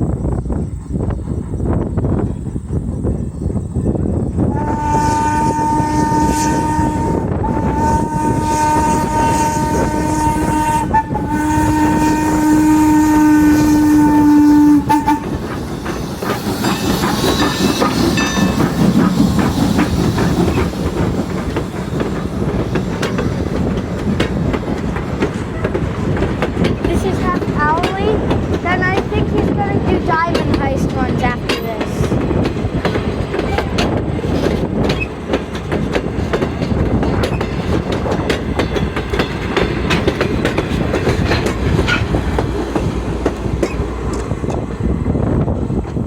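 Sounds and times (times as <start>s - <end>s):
train wheels rattling over rails: 0.0s - 46.0s
train whistle: 4.5s - 15.6s.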